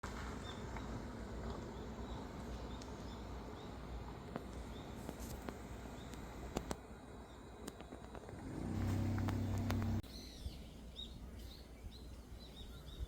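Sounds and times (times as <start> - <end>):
steady low rumble: 0.1 - 10.0
faint bird chirps: 8.9 - 13.0.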